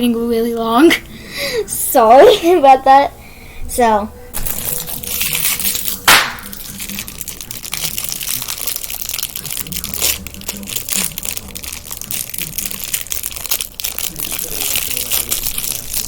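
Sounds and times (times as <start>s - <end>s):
plastic wrapper crinkling: 4.4s - 16.0s
sharp crack or rip: 4.4s - 16.0s.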